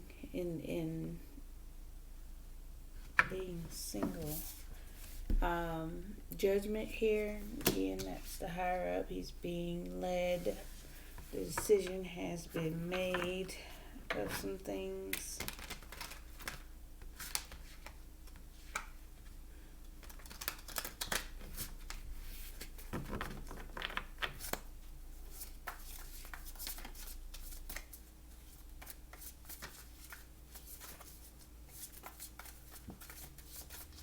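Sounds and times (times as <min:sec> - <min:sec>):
cards being shuffled: 0:15.1 - 0:18.9, 0:20.0 - 0:24.7, 0:25.3 - 0:34.0.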